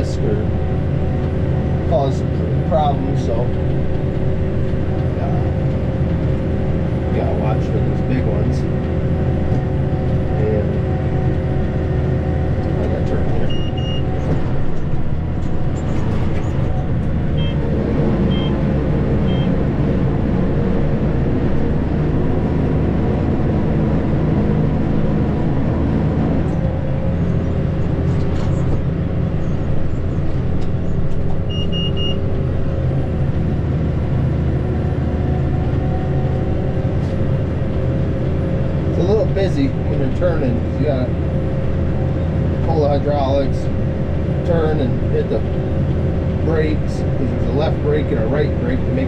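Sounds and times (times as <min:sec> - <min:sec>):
tractor diesel engine running: 0:00.0 - 0:49.0
short electronic beeps: 0:13.5 - 0:14.1, 0:17.4 - 0:17.6, 0:18.3 - 0:18.6, 0:19.2 - 0:19.6, 0:31.5 - 0:32.2.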